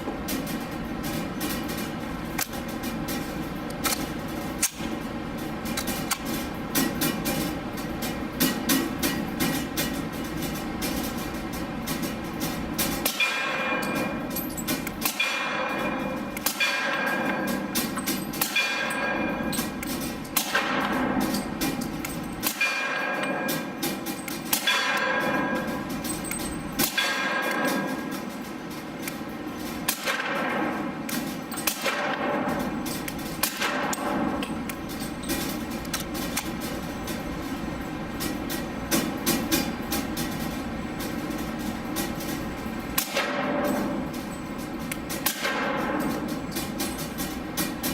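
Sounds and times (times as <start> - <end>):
hvac drone: 0.0 - 47.9
ringing metallic clang: 13.1 - 19.9.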